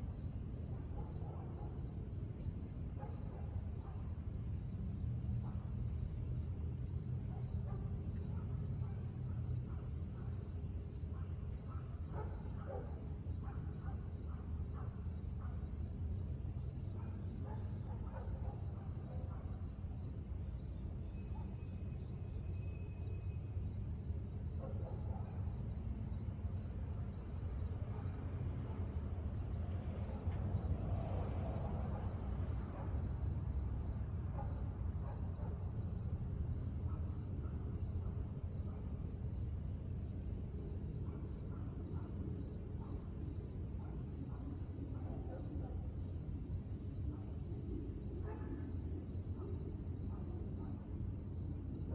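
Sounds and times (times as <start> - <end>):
constant low rumble: 0.0 - 51.9
insects chirping in a trill: 0.0 - 51.9.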